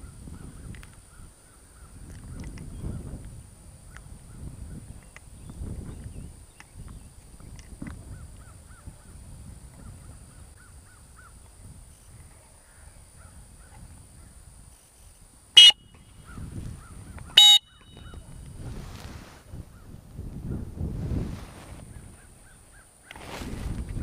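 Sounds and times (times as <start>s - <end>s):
dog whistle blasts: 15.6s - 15.9s, 17.4s - 18.0s.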